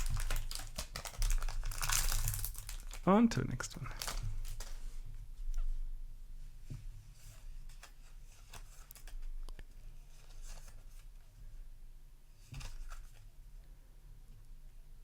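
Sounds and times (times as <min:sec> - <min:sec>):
foil wrapper crinkling and tearing: 0:00.0 - 0:04.8
trading cards rustling: 0:00.0 - 0:04.8.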